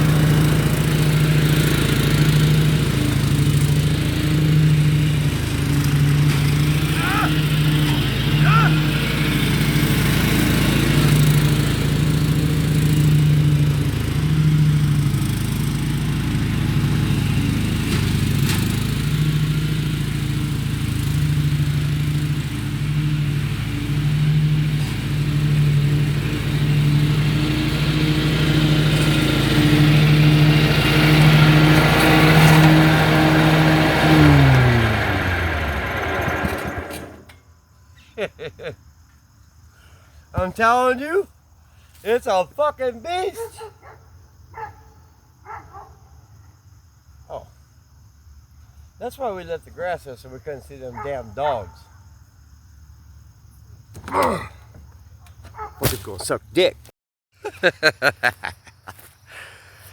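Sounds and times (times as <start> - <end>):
lawnmower engine running: 0.0 - 37.4.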